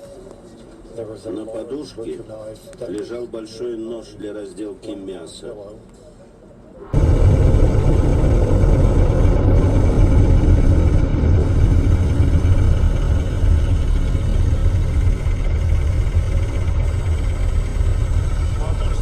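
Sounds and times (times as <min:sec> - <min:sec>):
car engine low rumble: 0:06.8 - 0:19.0.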